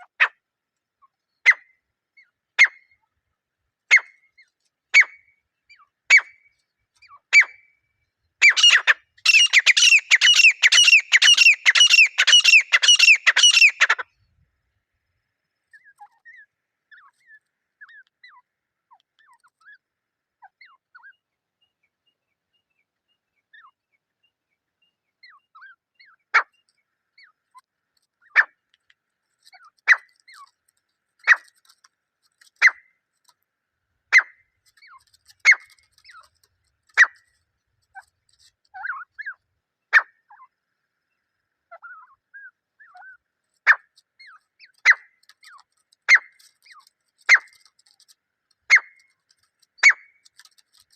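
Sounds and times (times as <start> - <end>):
francolin calling: 8.4 - 14.0.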